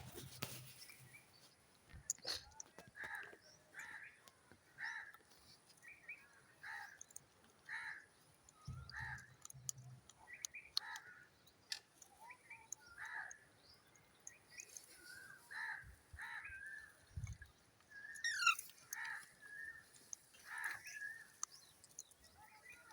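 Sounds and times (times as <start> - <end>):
parrot harsh calls: 18.2 - 18.6.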